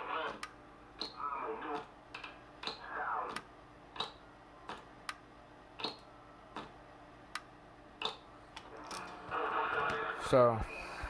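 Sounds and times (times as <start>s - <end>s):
faint steady hum: 0.0s - 11.0s
sharp ticking clicks: 7.3s - 8.2s.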